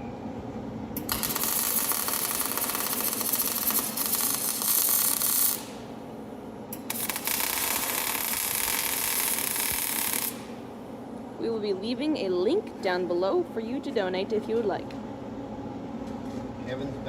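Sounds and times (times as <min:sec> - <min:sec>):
welding arc crackling: 0:01.0 - 0:06.0, 0:06.7 - 0:10.6.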